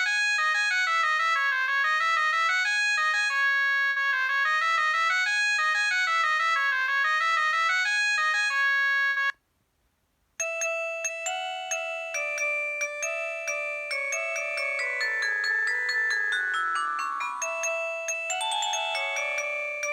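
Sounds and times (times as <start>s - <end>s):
bell-like ringtone notes: 10.4s - 19.9s
electronic ringtone melody: 10.4s - 19.9s.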